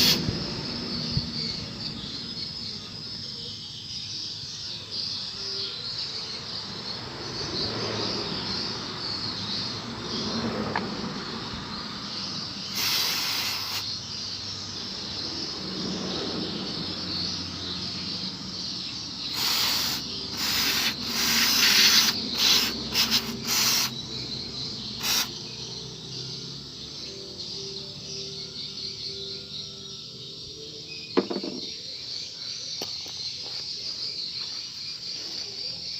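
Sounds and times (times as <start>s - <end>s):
aerosol can spraying: 0.0s - 0.3s, 12.7s - 13.9s, 19.3s - 24.0s, 25.0s - 25.4s
insect chirring: 0.0s - 35.9s.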